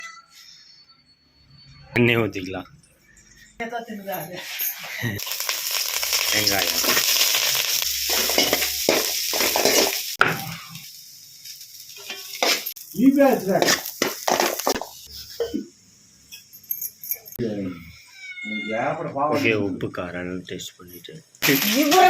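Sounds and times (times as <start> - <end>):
onions sizzling in hot oil: 5.2 - 15.4, 21.4 - 22.0.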